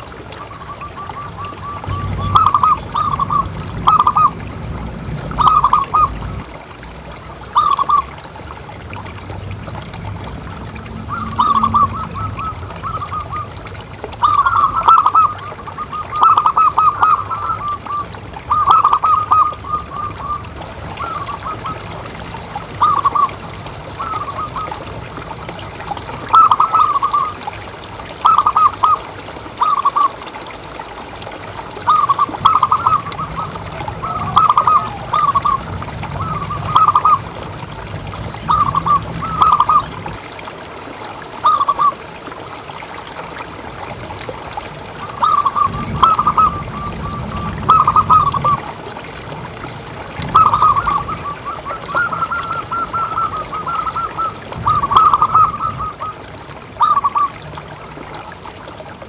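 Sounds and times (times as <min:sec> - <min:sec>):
dove cooing: 0:00.8 - 0:04.4, 0:05.4 - 0:06.3, 0:11.0 - 0:23.4, 0:31.9 - 0:37.4, 0:38.4 - 0:40.1, 0:45.2 - 0:48.7, 0:50.2 - 0:56.2.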